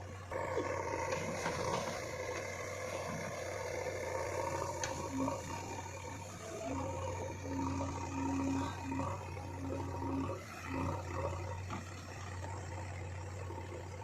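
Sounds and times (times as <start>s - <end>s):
heavy machinery diesel engine: 0.0s - 14.0s.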